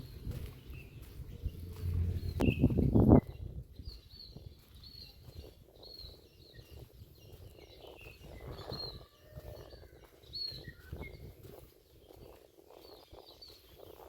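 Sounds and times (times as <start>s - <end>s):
irregular low thumps: 0.0s - 4.6s
small birds chirping: 0.0s - 14.0s.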